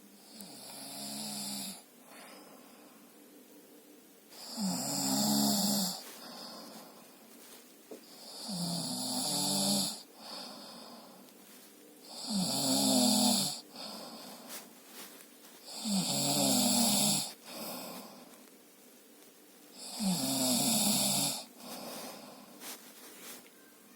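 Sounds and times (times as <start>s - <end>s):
man snoring: 0.2s - 1.8s, 4.4s - 6.6s, 8.1s - 10.9s, 12.0s - 14.2s, 15.6s - 18.1s, 19.8s - 22.3s
soft breath: 2.0s - 8.6s, 10.0s - 12.2s, 13.5s - 16.4s, 17.1s - 18.5s, 21.4s - 23.9s.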